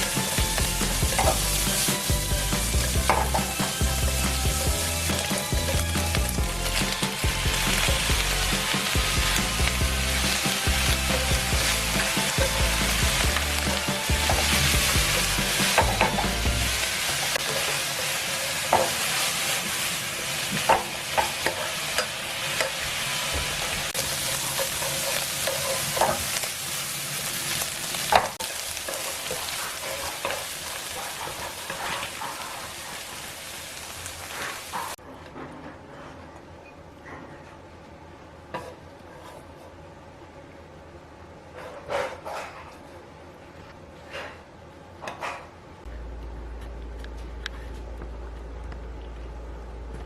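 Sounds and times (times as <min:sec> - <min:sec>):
food sizzling in a frying pan: 0:00.0 - 0:35.0.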